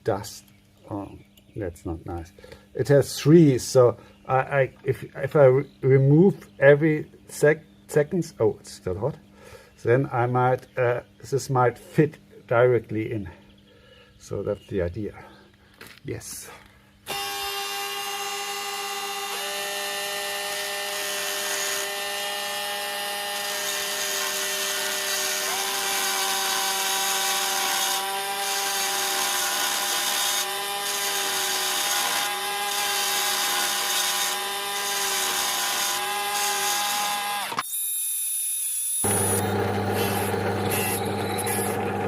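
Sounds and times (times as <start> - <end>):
power tool motor whine: 17.1 - 42.0.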